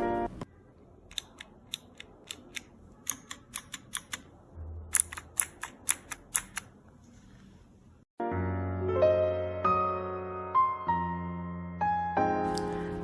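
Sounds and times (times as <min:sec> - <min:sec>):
mechanical keyboard switch clicks: 0:01.1 - 0:04.3, 0:04.9 - 0:06.7.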